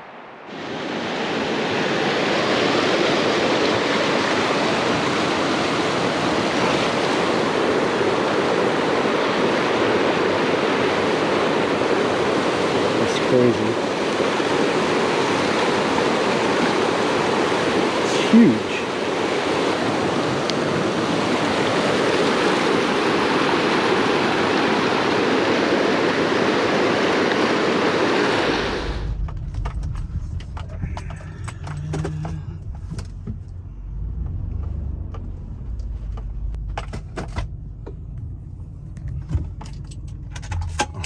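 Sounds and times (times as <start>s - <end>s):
river water rushing: 0.0s - 33.0s
low vehicle rumble: 28.4s - 41.0s
clicks and rattles: 29.0s - 33.6s, 39.0s - 41.0s.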